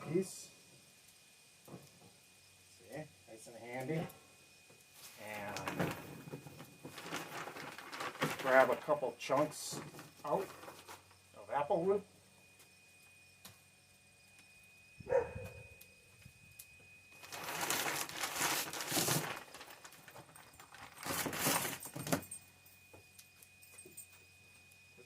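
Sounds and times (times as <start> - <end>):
wood chunks rattling and scraping: 5.6 - 11.0, 17.2 - 22.3.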